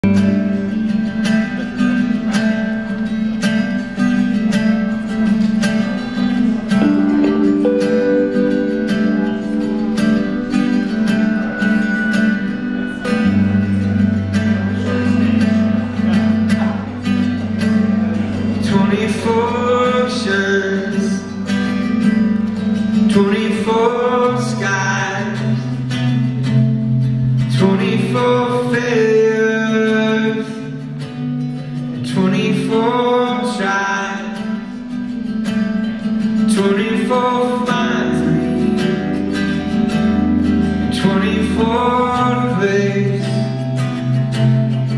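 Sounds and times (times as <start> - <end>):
guitar: 0.0 - 44.9
man singing: 3.6 - 26.6, 27.2 - 31.1, 31.8 - 35.2, 36.2 - 44.9
sustained bass notes: 4.3 - 31.0, 36.6 - 44.9.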